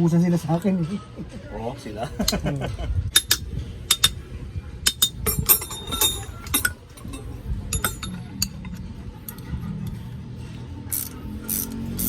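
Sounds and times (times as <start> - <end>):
metal tools clinking: 3.1 - 4.2, 4.8 - 10.0.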